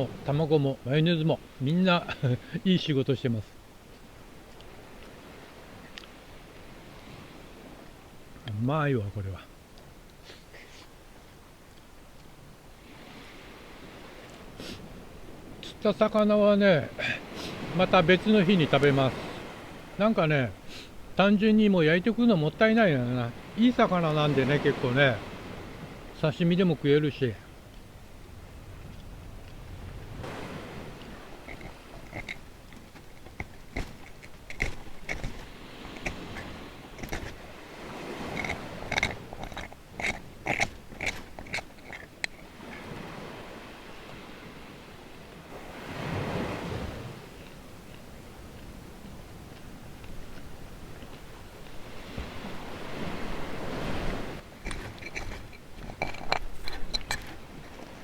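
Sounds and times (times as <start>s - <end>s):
surf washing: 0.0s - 58.0s
person chewing: 31.0s - 37.4s, 38.2s - 42.5s.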